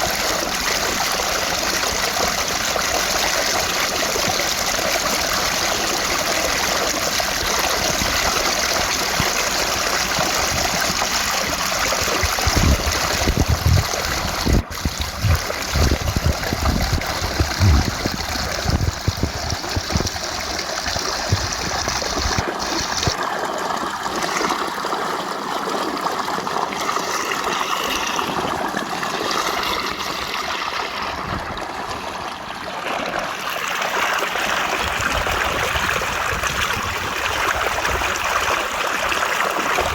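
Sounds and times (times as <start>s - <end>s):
rushing water of a waterfall: 0.0s - 39.9s
low thumps: 14.5s - 20.3s.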